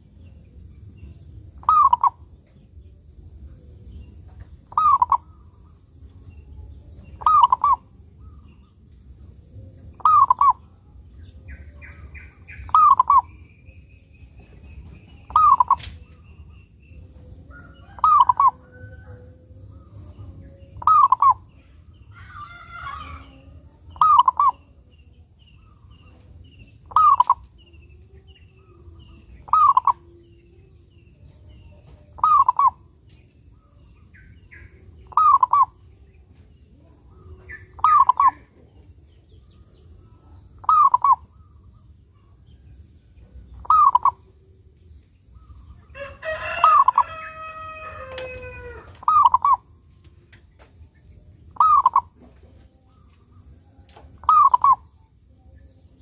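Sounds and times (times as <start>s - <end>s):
dove cooing: 1.6s - 2.3s, 4.6s - 5.4s, 7.2s - 8.4s, 9.8s - 10.7s, 11.8s - 13.3s, 15.2s - 16.0s, 17.5s - 20.2s, 20.8s - 21.5s, 24.0s - 24.6s, 26.9s - 27.4s, 29.4s - 30.1s, 32.2s - 32.9s, 35.0s - 35.8s, 37.1s - 38.7s, 40.5s - 41.6s, 43.6s - 44.2s, 48.2s - 49.6s, 51.6s - 52.6s, 54.2s - 54.8s
rooster crowing: 17.5s - 19.6s, 22.1s - 23.5s, 45.9s - 49.3s.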